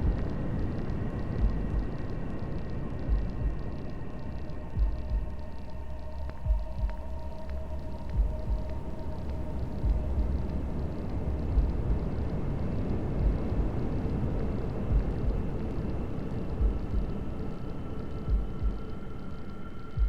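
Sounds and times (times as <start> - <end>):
heartbeat thumps: 0.0 - 0.3, 1.4 - 2.1, 3.0 - 3.8, 4.8 - 5.5, 6.4 - 7.2, 8.0 - 8.9, 9.8 - 10.5, 11.5 - 12.2, 13.2 - 13.8, 14.9 - 15.6, 16.5 - 17.3, 18.3 - 18.9
faint hum: 0.0 - 20.0
white-noise hiss: 0.0 - 20.0.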